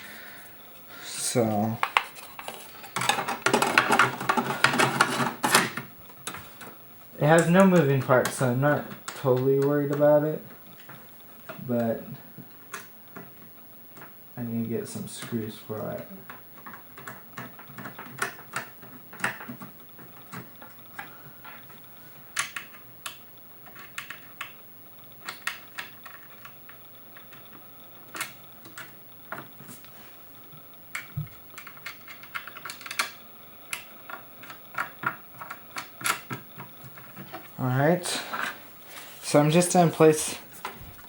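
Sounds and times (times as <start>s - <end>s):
computer hardware clicking: 30.9s - 37.5s.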